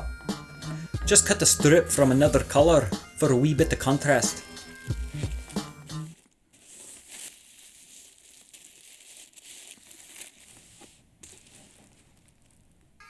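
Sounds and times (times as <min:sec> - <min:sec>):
plastic bag crinkling: 0:04.1 - 0:13.0.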